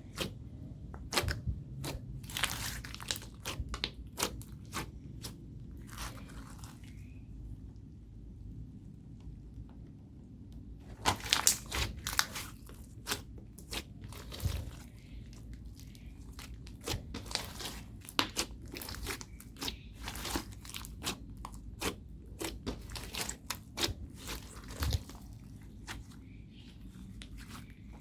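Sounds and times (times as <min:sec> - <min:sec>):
slime crackling and popping: 0:01.0 - 0:06.7, 0:11.0 - 0:26.0.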